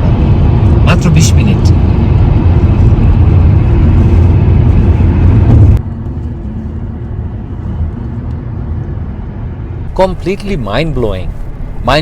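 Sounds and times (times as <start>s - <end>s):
car road and engine rumble: 0.0s - 12.0s.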